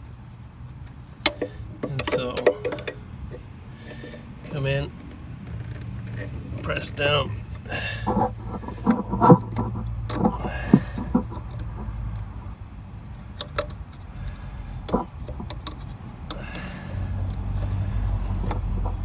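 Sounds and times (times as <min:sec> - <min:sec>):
steady low hum: 0:00.0 - 0:19.0
ratchet metallic clicks: 0:00.8 - 0:19.0.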